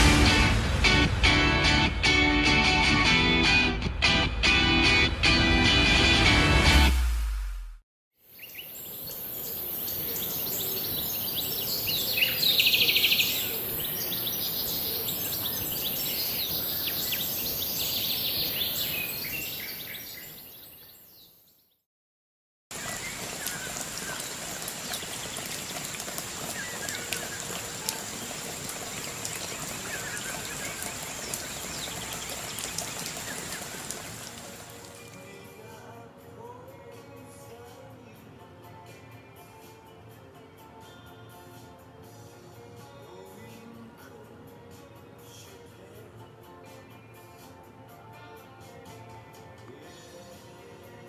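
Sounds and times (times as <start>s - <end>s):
small birds chirping: 8.3s - 21.8s, 22.8s - 34.8s
steady background hiss: 8.4s - 21.0s.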